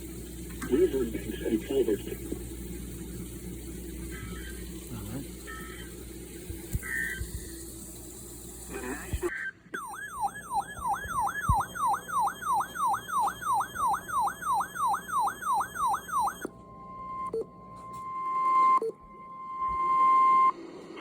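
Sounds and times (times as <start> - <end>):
steady electronic alarm tone: 3.8 - 7.8, 9.2 - 20.6
falling siren-like sweep: 9.8 - 16.5.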